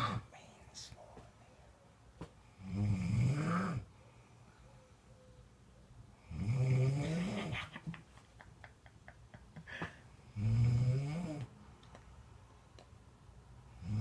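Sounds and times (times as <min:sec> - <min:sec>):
loud pitched snoring: 0:02.6 - 0:03.9, 0:06.3 - 0:07.5, 0:10.3 - 0:11.5, 0:13.8 - 0:14.0.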